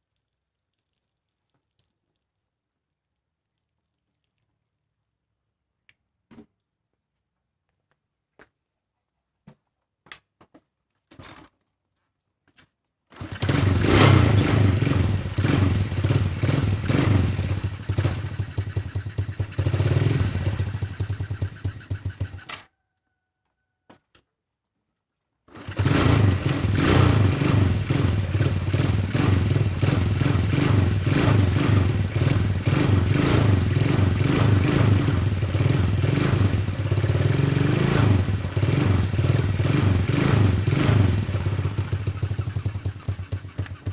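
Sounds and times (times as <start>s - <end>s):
motorcycle engine running: 13.2s - 22.5s, 25.5s - 43.9s.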